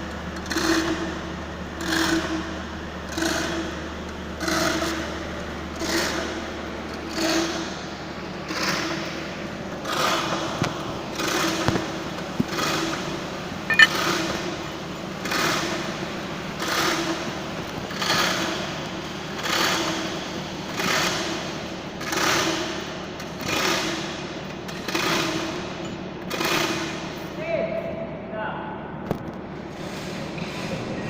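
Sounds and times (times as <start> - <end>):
crane hoist mechanical clatter: 0.0 - 27.3
sharp metallic clink: 13.7 - 13.9.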